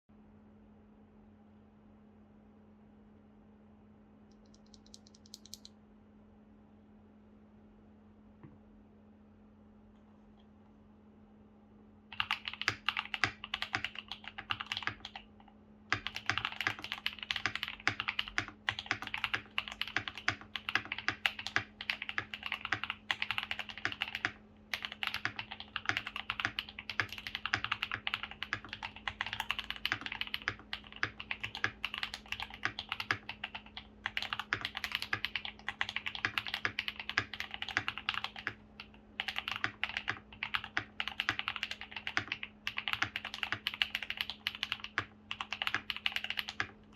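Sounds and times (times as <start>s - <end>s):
mechanical keyboard typing: 4.4s - 5.7s, 12.1s - 46.9s.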